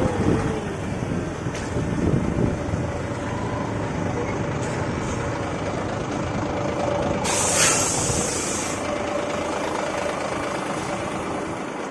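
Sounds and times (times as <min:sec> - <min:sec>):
heavy engine running: 0:00.0 - 0:11.9
hissing air burst: 0:07.2 - 0:08.9.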